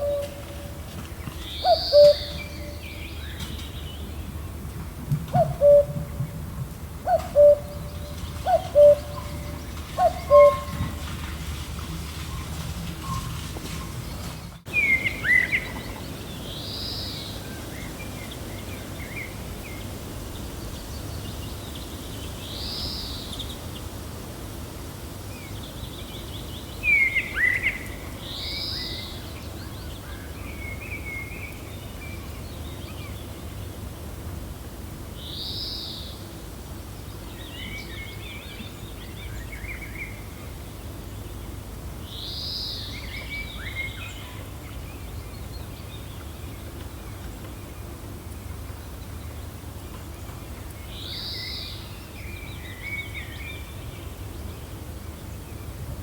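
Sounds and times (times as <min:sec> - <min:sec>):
gentle wind: 0:00.0 - 0:56.0
bird high arched call: 0:01.6 - 0:02.8.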